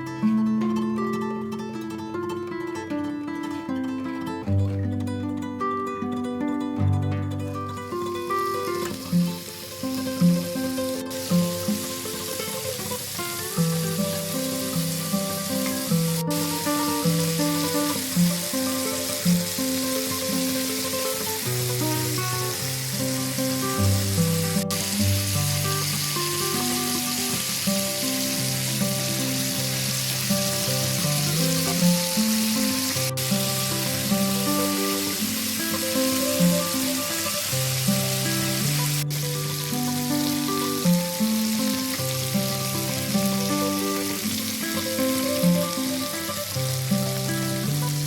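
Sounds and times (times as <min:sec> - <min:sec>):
plucked background music: 0:00.0 - 0:48.0
food sizzling in oil: 0:07.8 - 0:48.0.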